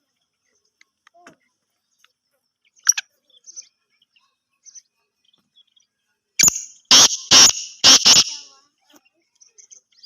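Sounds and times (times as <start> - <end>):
partridges calling: 1.8 - 8.5
harsh bird call: 6.4 - 8.5.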